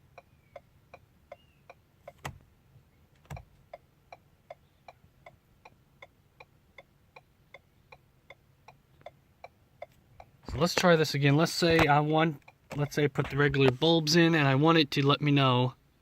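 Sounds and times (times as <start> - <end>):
turn signal clicking: 0.0 - 2.5, 3.2 - 10.8, 11.7 - 13.0.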